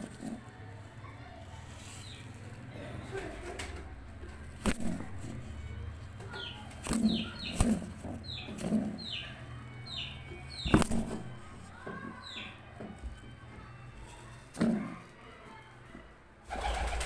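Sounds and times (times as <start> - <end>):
pigeon cooing: 2.8 - 11.4, 16.5 - 17.0
pigeon wing slaps: 3.4 - 3.9, 4.6 - 5.4, 6.4 - 8.8, 10.6 - 11.4.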